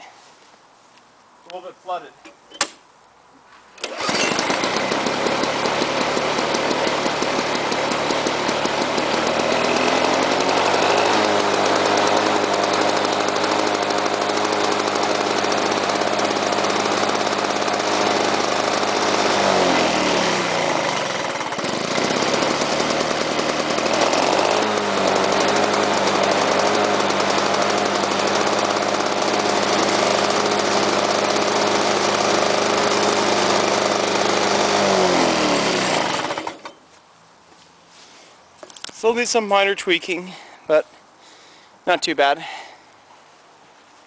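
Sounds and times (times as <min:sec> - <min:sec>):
two-stroke lawnmower engine running: 0:03.8 - 0:36.8.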